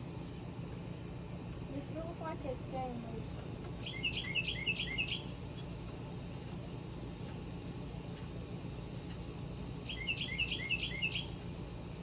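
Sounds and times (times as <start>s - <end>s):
songbird chirping: 2.9s - 5.4s, 9.8s - 11.4s.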